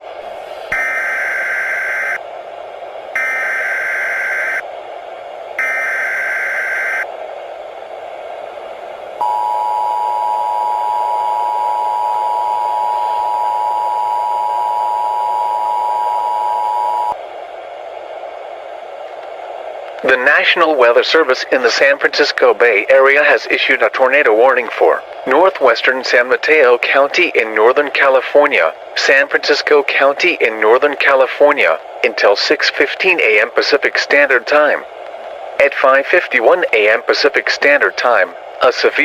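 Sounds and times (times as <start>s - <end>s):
constant hiss: 0.0s - 39.0s
digital header data bursts: 3.2s - 4.6s, 5.6s - 7.0s
two-tone attention signal: 9.2s - 17.2s.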